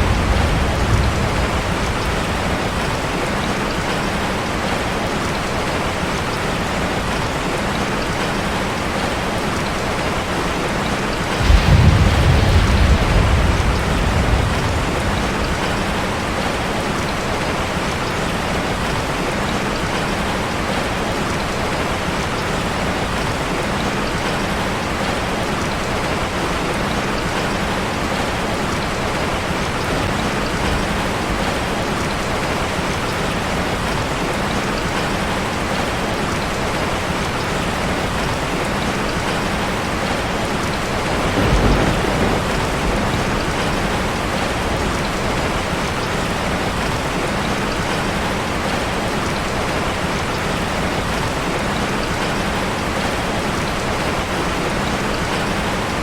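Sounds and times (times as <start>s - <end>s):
low rumble: 0.0s - 3.1s, 11.4s - 15.8s
rain falling on a street: 0.0s - 56.0s.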